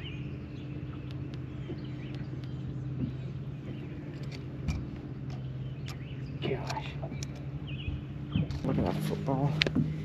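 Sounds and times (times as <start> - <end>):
boat motor hum: 0.0 - 10.0.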